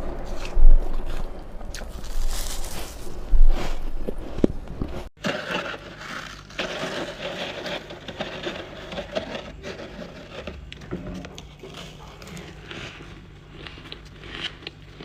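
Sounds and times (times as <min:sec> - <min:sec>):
chewing and crunching ice: 0:05.2 - 0:15.0.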